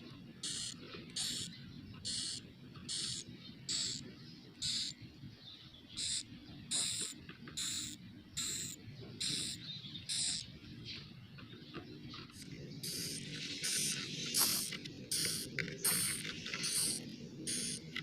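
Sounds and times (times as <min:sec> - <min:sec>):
steady low hum: 0:00.0 - 0:18.0
bird chicks hissing calls: 0:00.4 - 0:04.0, 0:04.6 - 0:05.0, 0:06.0 - 0:10.5, 0:12.4 - 0:17.9.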